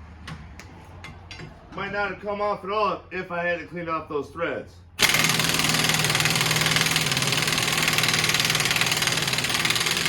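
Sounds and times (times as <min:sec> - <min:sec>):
impact wrench rattling: 0:05.0 - 0:10.0.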